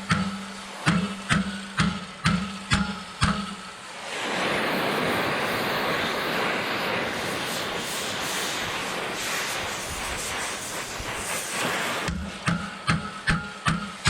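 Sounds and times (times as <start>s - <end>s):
torch hissing: 3.9s - 12.8s.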